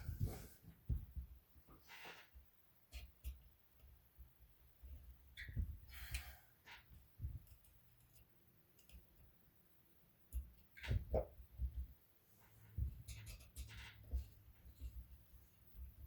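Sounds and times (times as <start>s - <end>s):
light clicks and small knocks: 0.7s - 9.6s, 10.2s - 16.0s.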